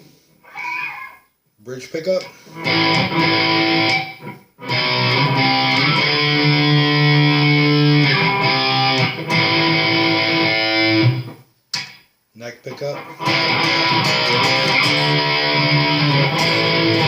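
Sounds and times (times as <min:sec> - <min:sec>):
electric guitar chords ringing: 0:02.6 - 0:11.4, 0:13.1 - 0:17.0.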